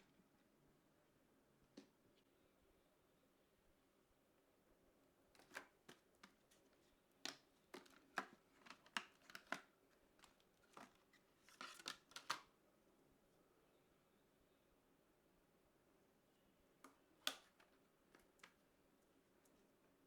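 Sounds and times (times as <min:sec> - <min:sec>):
hands handling parts and packaging: 0:05.4 - 0:12.5.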